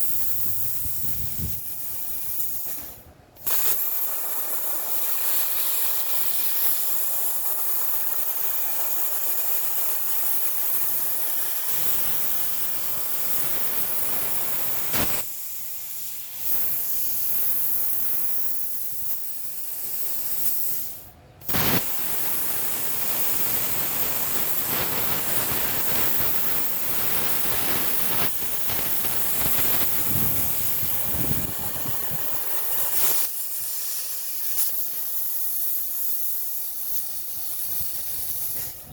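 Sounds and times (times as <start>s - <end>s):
plasma arc sharp crack: 0.0s - 7.7s, 10.4s - 15.3s, 20.4s - 34.9s
plasma torch hissing: 0.0s - 38.9s.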